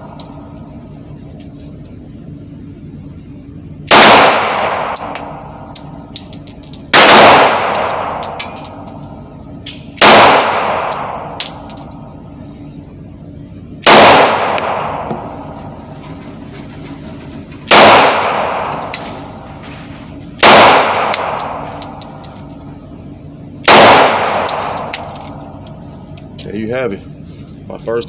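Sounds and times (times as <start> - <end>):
pistol shots ringing: 3.9 - 12.8, 13.8 - 15.8, 17.7 - 19.6, 20.4 - 25.7.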